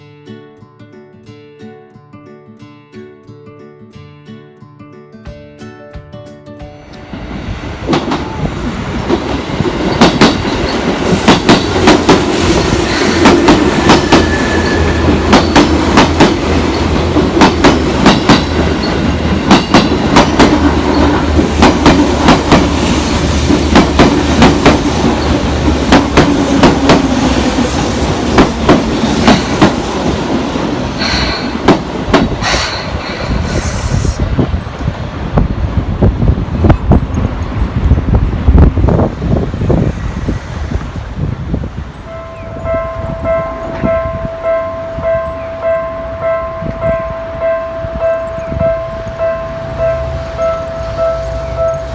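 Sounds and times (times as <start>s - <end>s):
train rumble: 6.8s - 51.9s
train wheels clacking over rail joints: 9.0s - 30.2s, 31.0s - 33.8s.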